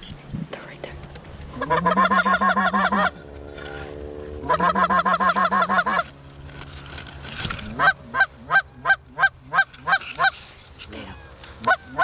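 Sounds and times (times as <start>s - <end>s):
geese honking: 1.5s - 6.4s, 7.4s - 12.0s.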